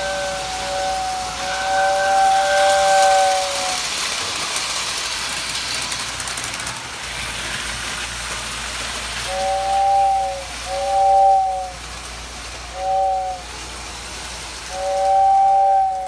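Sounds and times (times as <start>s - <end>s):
toy train whistle: 0.0s - 5.6s, 8.9s - 16.0s
steady hiss: 0.0s - 16.0s
toy train clicking: 0.0s - 16.0s.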